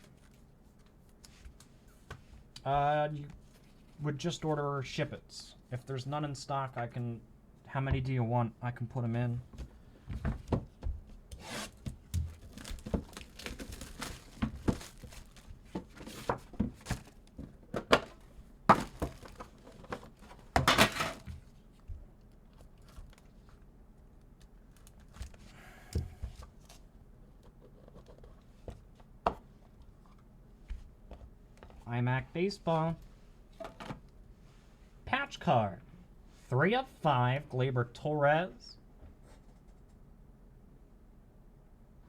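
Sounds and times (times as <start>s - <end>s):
card packaging tearing: 11.4s - 15.5s.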